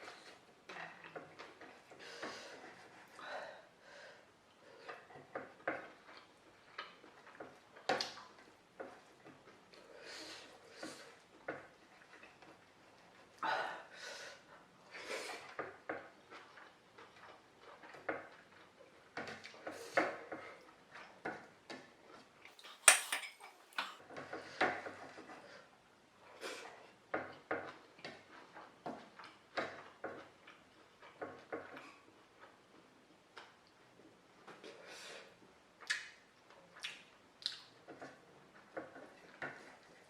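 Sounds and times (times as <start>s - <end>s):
utensil clinking and scraping a dish: 22.6s - 25.4s.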